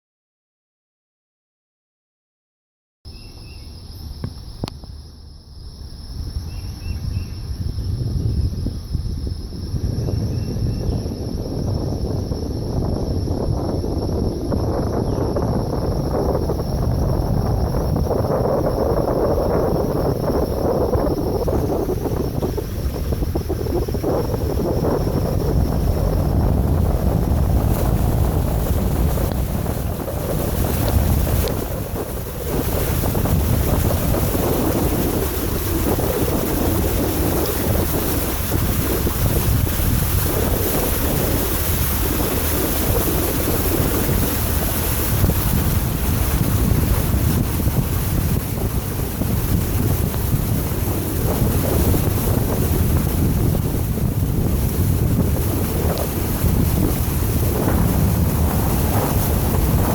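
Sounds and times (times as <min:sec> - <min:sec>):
water rushing under vehicle: 0:11.0 - 0:59.9.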